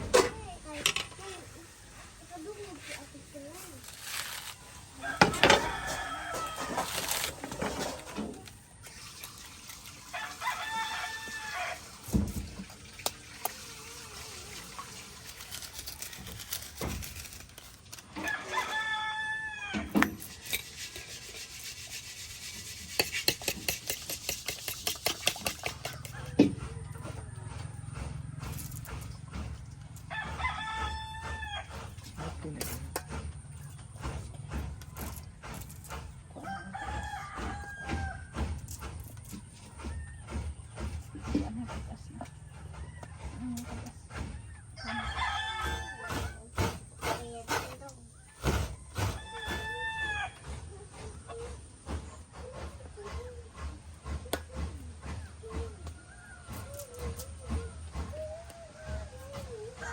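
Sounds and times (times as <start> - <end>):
rooster crowing: 5.0 - 7.3, 10.1 - 11.8, 18.2 - 20.0, 25.8 - 28.0, 30.0 - 31.8, 36.4 - 38.3, 44.5 - 46.5, 48.8 - 50.5, 56.0 - 59.9.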